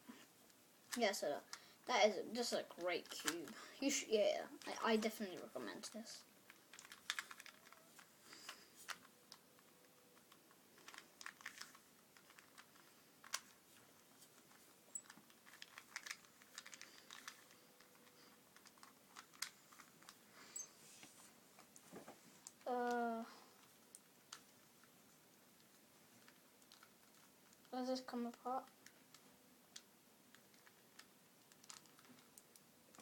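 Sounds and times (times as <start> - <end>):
puzzle cube plastic clicks: 2.4 - 3.6, 4.6 - 13.6, 14.4 - 20.7, 25.6 - 27.7, 28.3 - 33.0.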